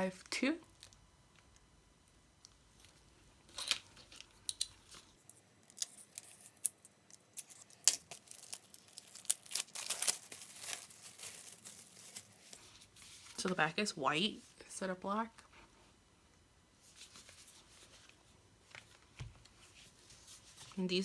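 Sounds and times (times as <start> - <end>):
packaging crinkling: 2.4 - 13.4.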